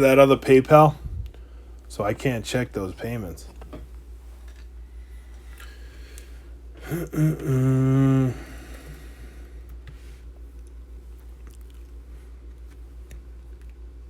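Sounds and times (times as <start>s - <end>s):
low background hum: 0.0s - 14.0s
man's wordless vocal sound: 6.8s - 8.6s.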